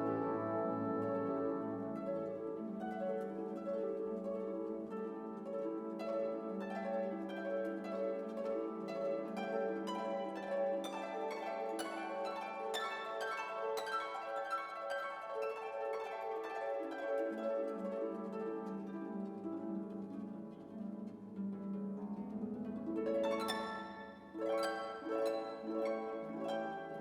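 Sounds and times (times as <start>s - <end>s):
sustained string chords: 0.0s - 2.8s
plucked harp-like notes: 0.0s - 27.0s.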